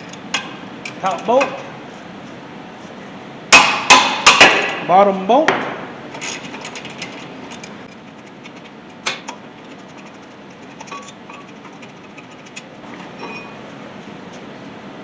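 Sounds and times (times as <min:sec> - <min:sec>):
sharp metal knock: 0:03.6 - 0:04.8.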